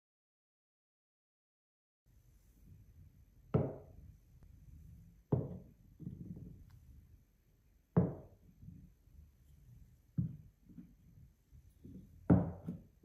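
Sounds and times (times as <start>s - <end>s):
balls knocking on wood: 3.5s - 4.0s, 5.3s - 6.6s, 8.0s - 8.8s, 10.1s - 11.0s, 11.8s - 13.0s.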